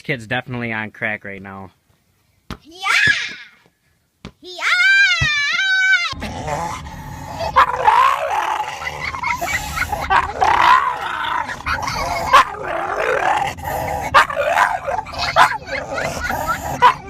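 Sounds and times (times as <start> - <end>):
dog making wavering vocal sounds: 6.1 - 17.0.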